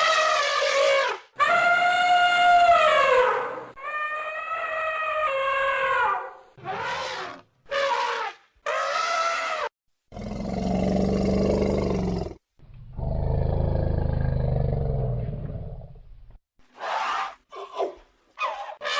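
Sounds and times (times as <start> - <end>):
elephant trumpeting: 0.0 - 9.7
elephant low roars: 10.2 - 16.0.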